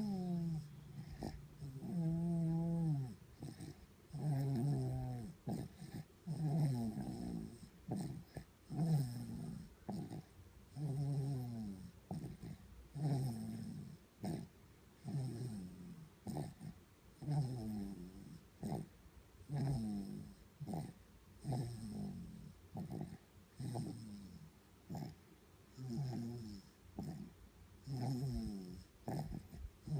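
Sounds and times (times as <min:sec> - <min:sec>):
baby snoring: 0:00.0 - 0:25.2, 0:25.8 - 0:29.9.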